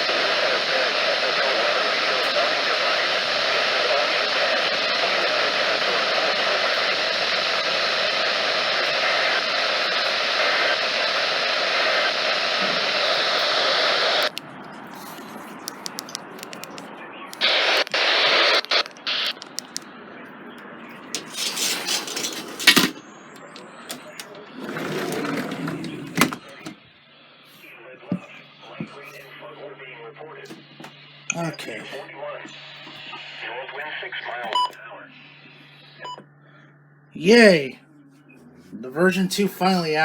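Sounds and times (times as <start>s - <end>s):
radio static hiss: 0.0s - 36.6s, 37.2s - 40.0s
scattered clicks: 14.2s - 18.0s, 18.6s - 19.9s.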